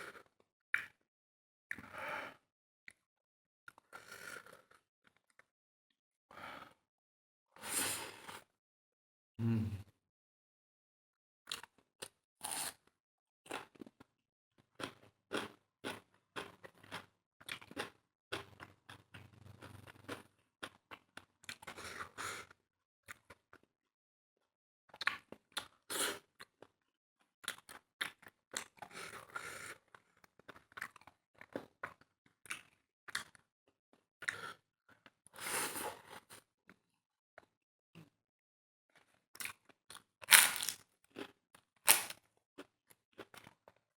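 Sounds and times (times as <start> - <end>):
chewing and crunchy bites: 13.5 - 22.1, 24.9 - 26.8, 27.4 - 33.4, 39.0 - 43.8.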